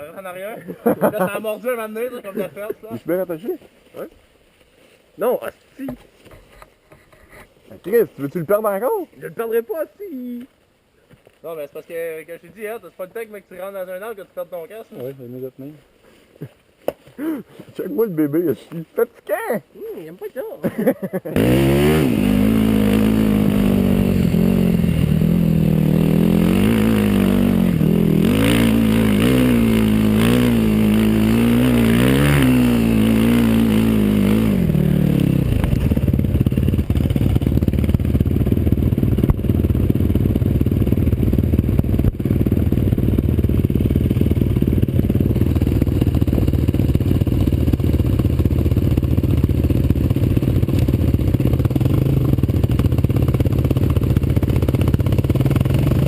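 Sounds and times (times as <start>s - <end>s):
atv engine revving: 21.4s - 56.0s.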